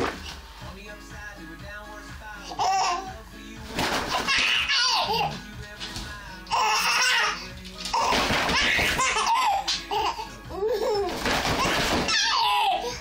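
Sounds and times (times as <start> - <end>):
baby laughing: 2.4 - 3.2, 3.9 - 5.5, 6.5 - 13.0
plastic mat crackling: 3.6 - 10.1, 10.8 - 12.8.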